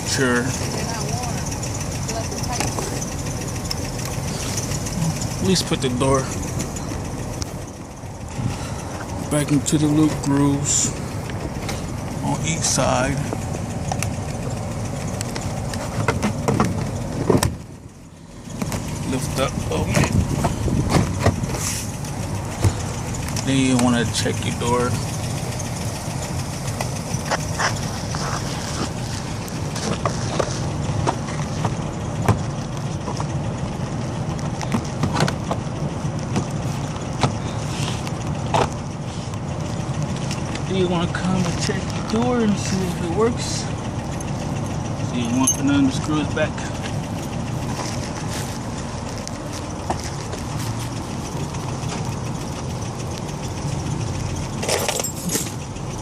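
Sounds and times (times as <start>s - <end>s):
car engine idling: 0.0s - 56.0s
steady low rumble: 0.0s - 56.0s
car door clicks and knocks: 16.0s - 17.6s, 31.0s - 32.4s.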